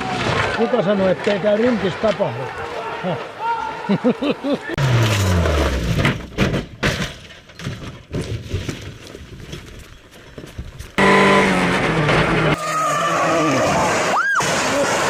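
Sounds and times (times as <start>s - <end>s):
car crash bangs and scrapes: 4.8s - 9.0s, 11.0s - 12.6s
car engine running steadily: 11.0s - 12.6s
rally car engine: 11.0s - 12.6s.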